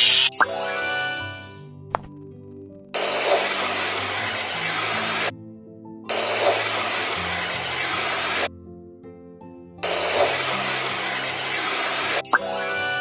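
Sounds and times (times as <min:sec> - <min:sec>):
loud spray-like hissing: 0:00.0 - 0:00.3, 0:03.0 - 0:05.3, 0:06.1 - 0:08.5, 0:09.8 - 0:12.3
light background music: 0:00.0 - 0:13.0.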